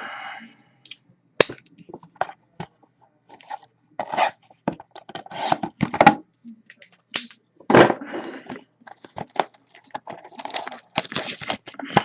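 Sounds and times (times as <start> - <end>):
packaging clicks and scrapes: 3.3 - 5.8, 8.9 - 12.0
packaging crinkling: 9.0 - 12.0.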